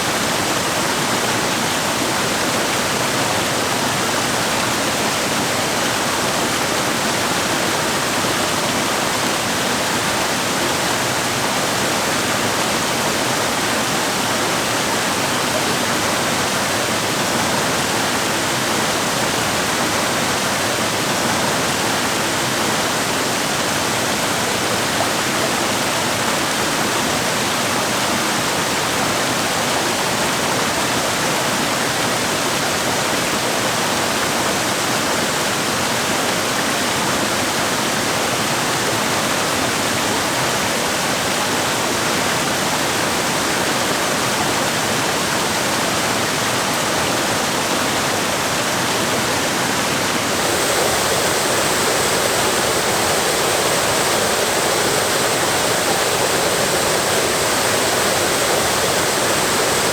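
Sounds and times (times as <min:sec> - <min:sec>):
water rushing over rocks: 0:50.0 - 0:59.9.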